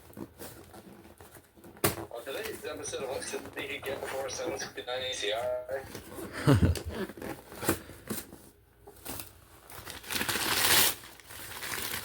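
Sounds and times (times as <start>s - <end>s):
packaging crinkling and rustling: 0.0s - 4.4s, 5.8s - 12.0s
packaging tearing: 9.0s - 12.0s.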